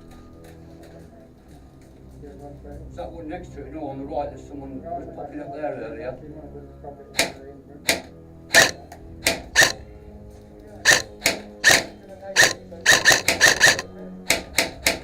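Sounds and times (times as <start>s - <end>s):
airsoft rifle shots: 7.9s - 9.8s, 10.9s - 13.8s.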